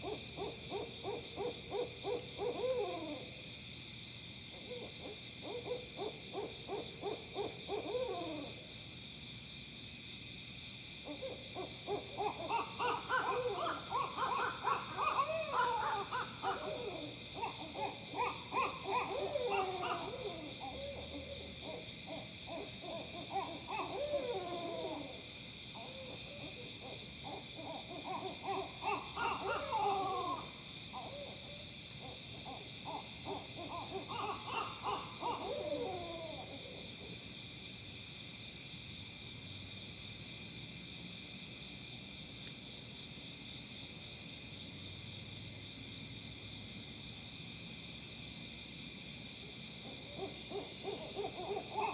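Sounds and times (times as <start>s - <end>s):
owls hooting and cackling: 0.0s - 3.4s, 4.6s - 8.6s, 11.1s - 36.9s, 49.8s - 51.9s
insect trilling: 11.1s - 37.2s, 49.8s - 51.9s.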